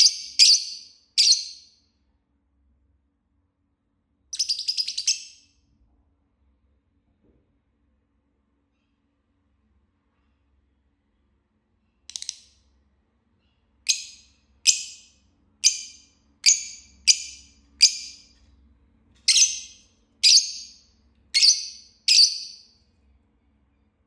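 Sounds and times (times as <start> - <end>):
bird chirping shrilly: 4.4 - 5.4, 19.3 - 20.8, 21.4 - 22.7.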